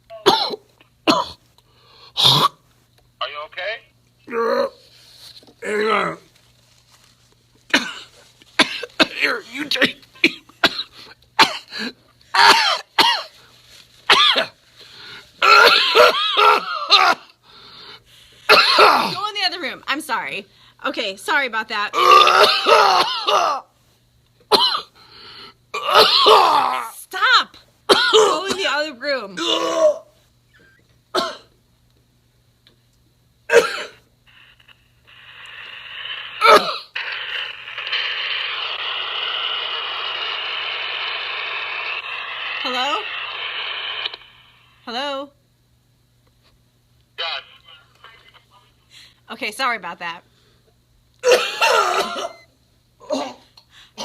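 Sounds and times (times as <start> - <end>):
man clearing throat: 2.2 - 2.6, 7.7 - 13.3, 29.4 - 30.0, 31.2 - 31.5, 33.5 - 34.0, 51.2 - 52.4, 53.0 - 53.5
man coughing: 7.7 - 13.3, 15.4 - 17.2, 18.5 - 19.1, 31.1 - 31.5, 33.5 - 34.0, 51.2 - 52.4, 53.0 - 53.5.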